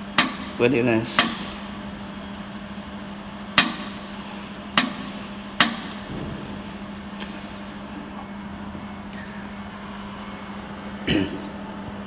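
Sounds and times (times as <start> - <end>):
low hum: 4.1 - 12.0
laser welder snapping: 4.8 - 6.8.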